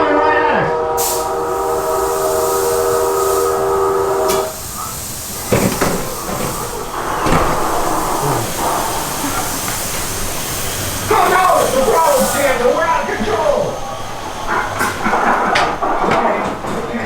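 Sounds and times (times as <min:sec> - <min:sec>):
train horn chord: 0:00.0 - 0:04.6.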